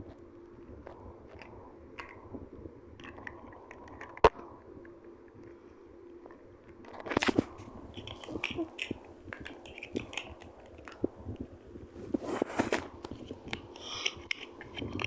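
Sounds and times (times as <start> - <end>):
plastic bricks clicking and rattling: 7.0 - 11.1, 12.6 - 15.0.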